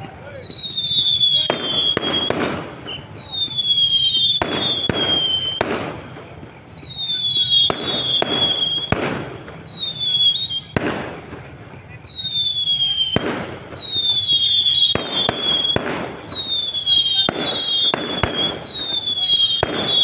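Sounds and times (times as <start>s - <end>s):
firework cracks: 0.0s - 20.0s
firework whistles sliding down: 0.0s - 20.0s.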